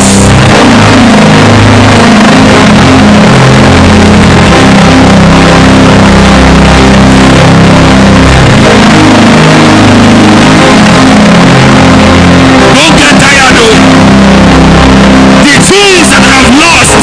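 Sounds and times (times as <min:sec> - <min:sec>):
church music: 0:00.0 - 0:17.0.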